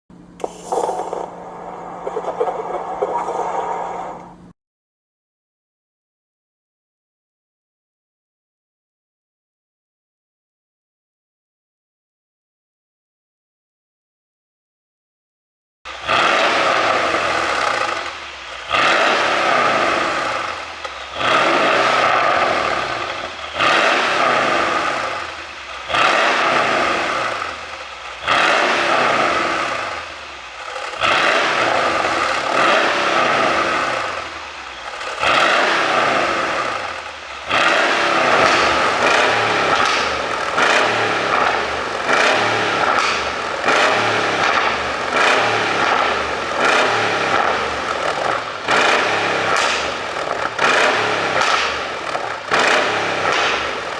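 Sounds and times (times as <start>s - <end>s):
car engine revving: 0.2s - 4.5s, 15.9s - 53.9s
exhaust pops and crackles: 15.9s - 53.9s.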